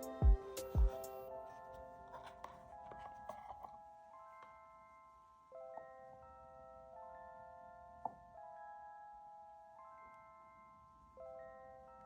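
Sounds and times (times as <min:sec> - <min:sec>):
soft bell-like mallet music: 0:03.7 - 0:12.0.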